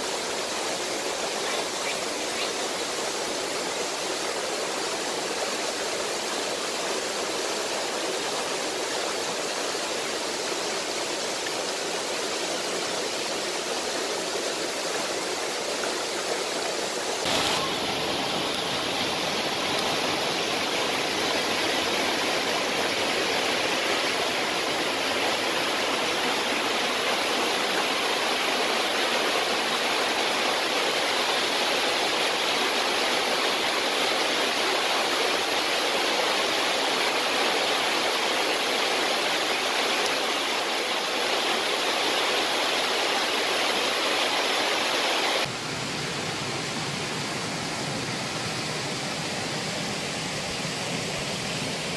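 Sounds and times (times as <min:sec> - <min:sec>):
running water rushing: 0:00.0 - 0:51.9.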